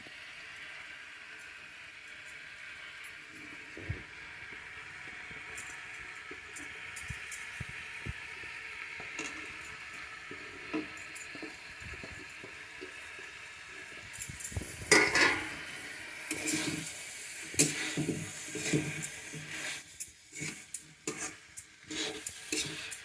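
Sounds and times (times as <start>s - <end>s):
noodles sizzling in a pan: 0.0s - 23.0s
spatula scraping a pan: 9.0s - 23.0s.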